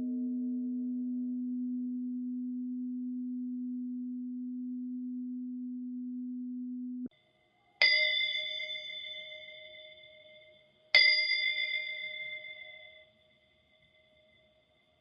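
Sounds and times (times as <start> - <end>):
small bell struck: 7.8 - 13.2
low steady bell tone: 7.8 - 14.8.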